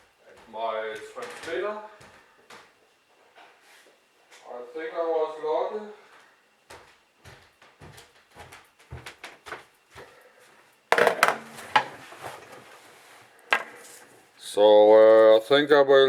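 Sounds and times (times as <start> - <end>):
objects clattering: 10.9 - 14.2.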